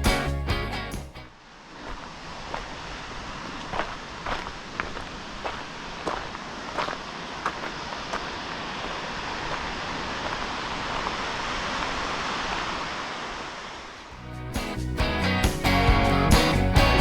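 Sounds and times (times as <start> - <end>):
acoustic guitar music: 0.0 - 1.3, 14.2 - 17.0
footsteps: 0.0 - 11.2
waterfall rushing: 2.1 - 17.0.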